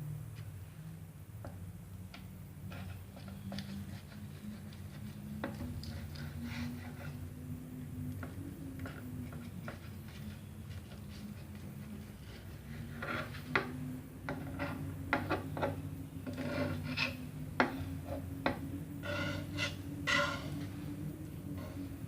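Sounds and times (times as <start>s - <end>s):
knife scraping and knocking: 12.8s - 20.7s
low hum: 15.8s - 22.0s.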